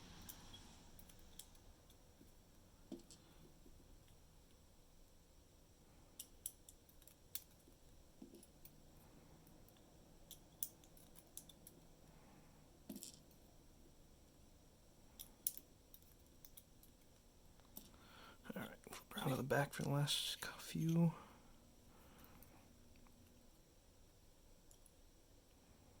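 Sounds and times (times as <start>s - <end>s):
small metallic clicks: 6.2s - 8.8s, 9.4s - 11.8s, 15.1s - 18.0s.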